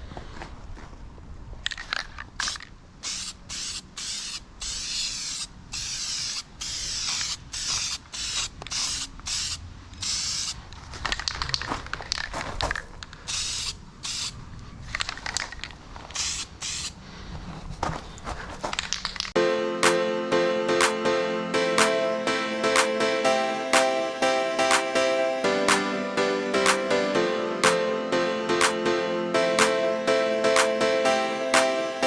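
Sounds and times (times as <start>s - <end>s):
spray paint hissing: 2.4s - 10.6s, 13.3s - 14.4s, 16.2s - 17.0s.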